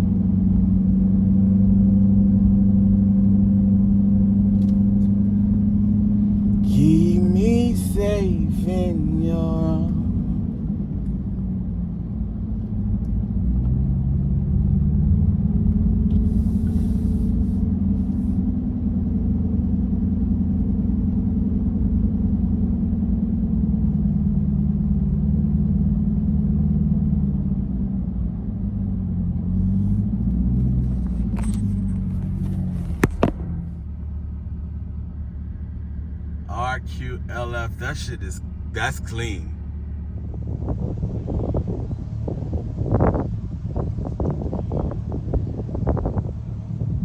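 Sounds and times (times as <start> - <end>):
car engine running: 4.5 - 11.7.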